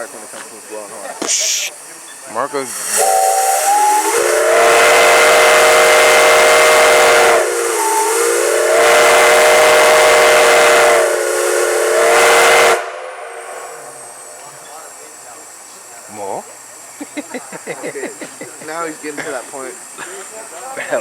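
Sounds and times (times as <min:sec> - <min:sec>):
steam hissing: 0:00.0 - 0:21.0
steam whistle chord: 0:02.7 - 0:14.4.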